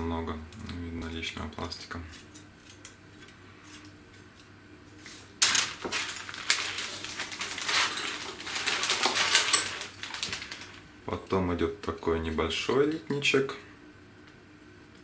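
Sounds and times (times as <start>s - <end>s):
plastic bag crinkling: 5.0s - 11.9s.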